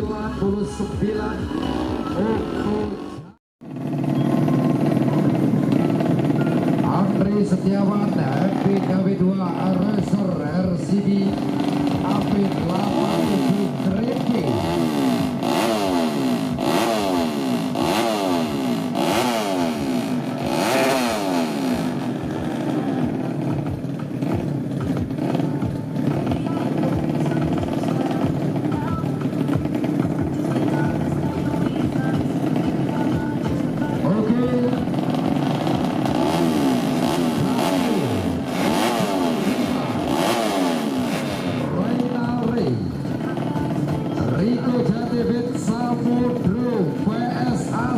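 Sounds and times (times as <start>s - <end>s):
motorcycle revving hard: 0.0s - 47.9s.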